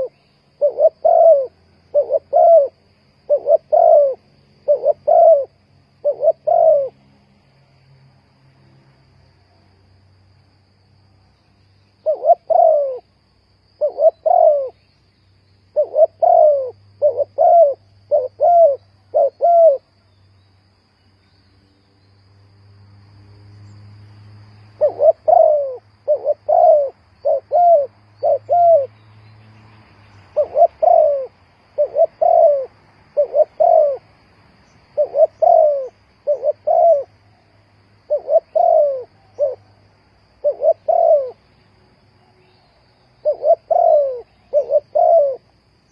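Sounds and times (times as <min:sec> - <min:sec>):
dove cooing: 0:00.0 - 0:07.0, 0:12.0 - 0:13.1, 0:13.8 - 0:14.8, 0:15.7 - 0:19.9, 0:24.8 - 0:28.9, 0:30.3 - 0:34.1, 0:34.9 - 0:37.2, 0:38.0 - 0:41.4, 0:43.2 - 0:45.9.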